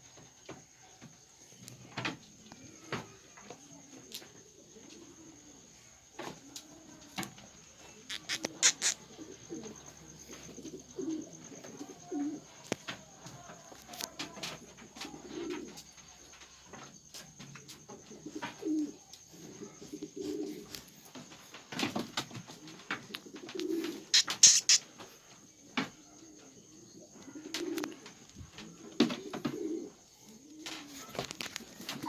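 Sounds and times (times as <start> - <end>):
pigeons cooing: 7.8 - 12.7, 14.2 - 16.0, 17.1 - 32.0.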